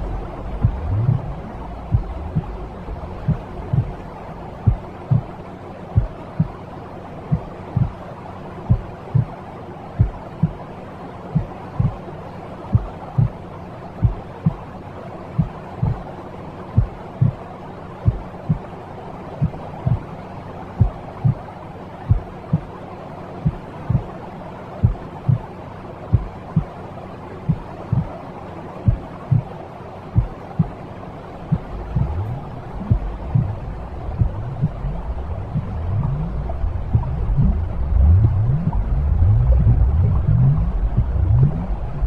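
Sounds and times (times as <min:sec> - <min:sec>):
heartbeat thumps: 0:00.0 - 0:05.3, 0:06.0 - 0:06.6, 0:07.3 - 0:08.0, 0:08.7 - 0:09.3, 0:10.0 - 0:10.6, 0:11.4 - 0:12.0, 0:12.7 - 0:13.4, 0:14.0 - 0:14.6, 0:15.4 - 0:16.0, 0:16.8 - 0:17.4, 0:18.0 - 0:18.7, 0:19.4 - 0:20.1, 0:20.8 - 0:21.4, 0:22.1 - 0:22.7, 0:23.4 - 0:24.1, 0:24.8 - 0:25.5, 0:26.1 - 0:26.8, 0:27.5 - 0:28.2, 0:28.8 - 0:29.5, 0:30.2 - 0:30.8, 0:31.5 - 0:42.0
white noise hiss: 0:00.0 - 0:42.0.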